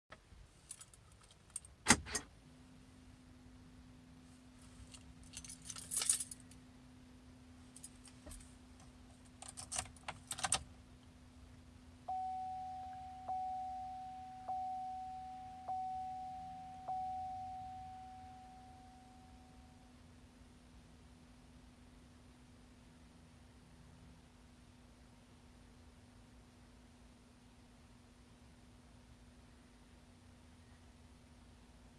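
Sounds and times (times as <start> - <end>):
keys jangling in ignition: 0.6 - 1.8, 4.8 - 6.6, 7.8 - 10.6
dashboard warning chime: 12.0 - 19.9.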